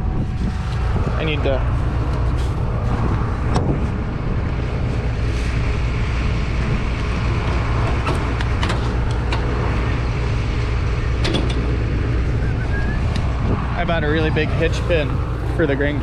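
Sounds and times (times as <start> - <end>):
vehicle engine droning: 0.0 - 16.0.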